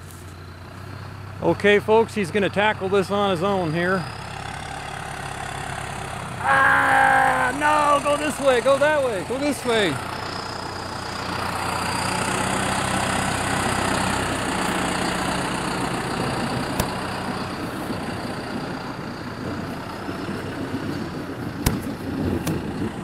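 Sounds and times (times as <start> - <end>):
tractor engine running: 0.0 - 23.0.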